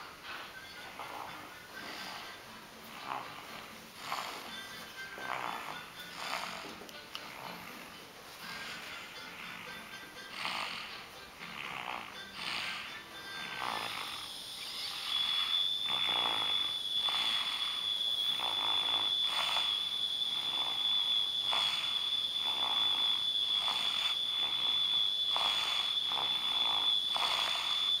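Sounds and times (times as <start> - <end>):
child snoring: 0.0 - 28.0
high-pitched tone: 0.0 - 28.0.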